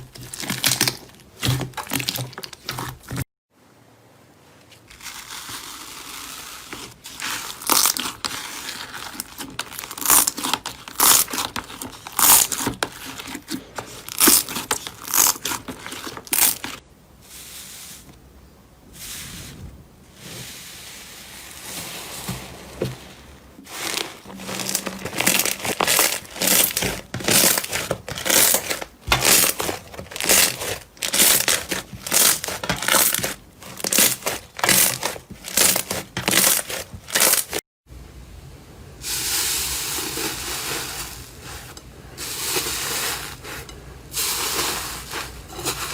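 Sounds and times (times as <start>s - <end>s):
slime squishing: 0.0s - 3.2s, 4.8s - 16.8s, 19.5s - 37.6s.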